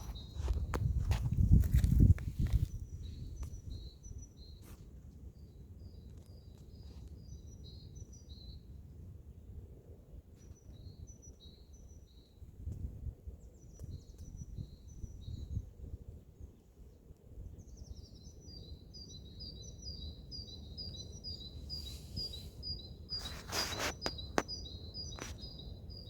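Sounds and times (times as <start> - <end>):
songbird chirping: 17.6 - 26.0.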